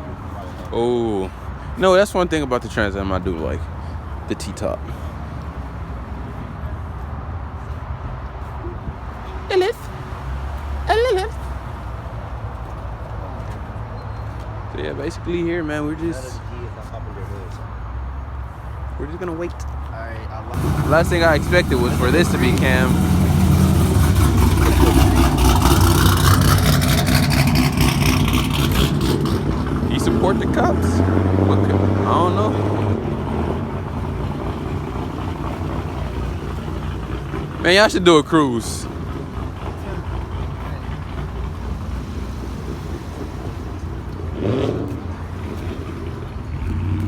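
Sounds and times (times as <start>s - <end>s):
vee eight engine running: 20.6s - 47.0s.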